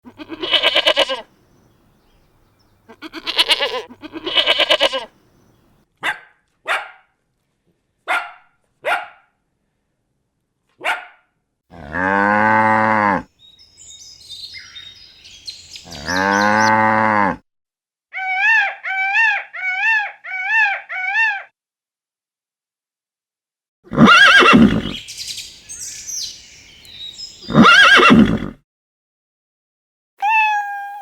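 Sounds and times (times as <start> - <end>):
sheep or goat bleating: 0.1 - 1.3, 2.9 - 5.1, 15.9 - 17.3, 30.2 - 31.0
dog barking: 6.0 - 7.2, 8.1 - 9.4, 10.8 - 11.3
cow mooing: 11.7 - 13.3, 15.9 - 17.4
faint high chirping: 13.4 - 16.7, 30.2 - 31.0.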